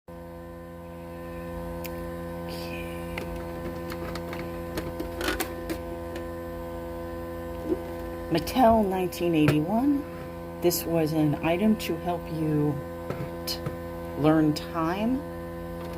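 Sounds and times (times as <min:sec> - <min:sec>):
electrical mains hum: 0:00.1 - 0:15.9.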